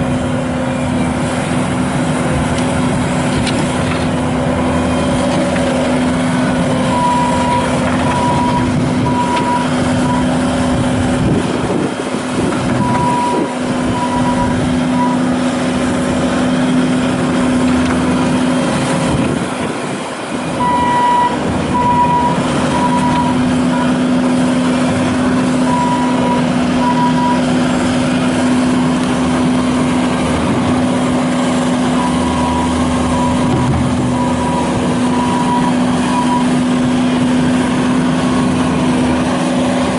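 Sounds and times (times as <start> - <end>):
diesel engine running: 0.0 - 39.9
back-up alarm beeps: 6.9 - 10.3, 12.8 - 15.2, 20.6 - 24.0, 25.6 - 27.4, 34.2 - 36.5.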